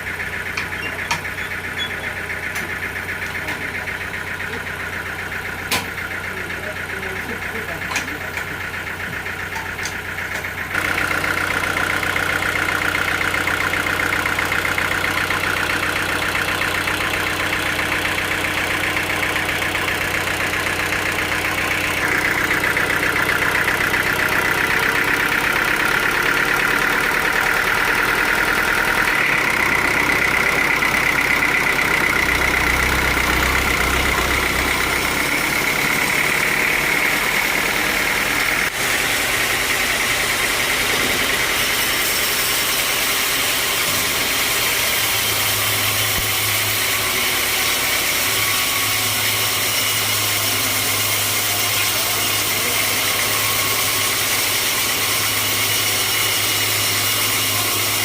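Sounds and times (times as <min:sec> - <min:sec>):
low engine hum: 0:00.0 - 0:42.2
high machine whine: 0:00.0 - 0:58.0.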